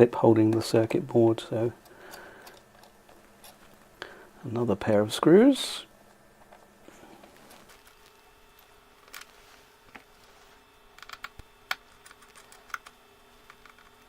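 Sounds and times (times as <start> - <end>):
faint electric hum: 0.0 - 14.0.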